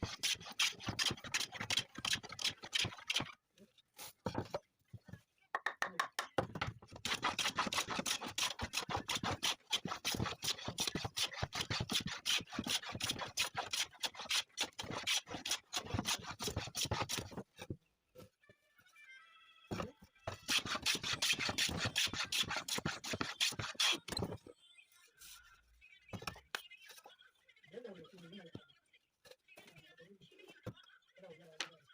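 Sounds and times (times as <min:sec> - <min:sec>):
hand tool scraping wood: 0:00.0 - 0:03.3, 0:07.0 - 0:17.4, 0:20.3 - 0:24.2.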